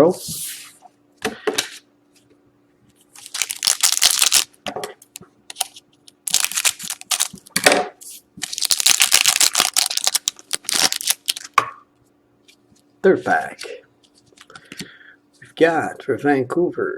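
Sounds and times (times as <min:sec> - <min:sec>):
foil wrapper crinkling and tearing: 0:03.2 - 0:04.6, 0:05.5 - 0:07.6, 0:08.4 - 0:11.6.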